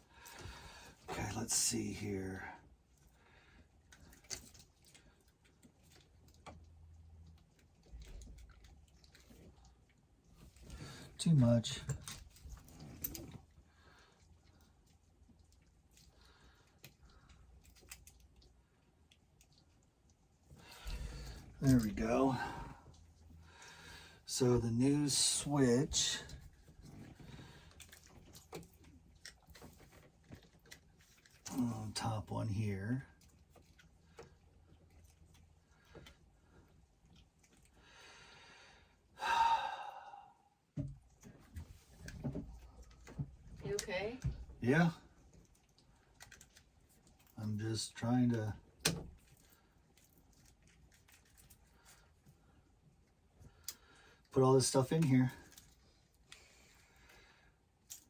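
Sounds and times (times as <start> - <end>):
man breathing in: 37.8 - 40.6
man sighing: 39.2 - 40.5.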